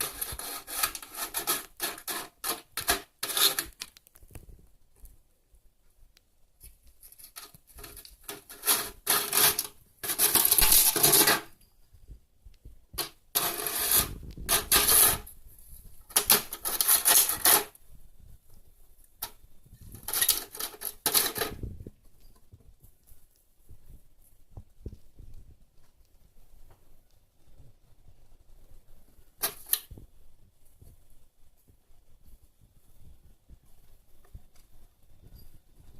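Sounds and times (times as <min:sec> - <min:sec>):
plastic lid clattering and scraping: 0:00.0 - 0:03.8, 0:07.3 - 0:11.5, 0:13.0 - 0:15.3, 0:16.1 - 0:17.7, 0:20.0 - 0:21.6.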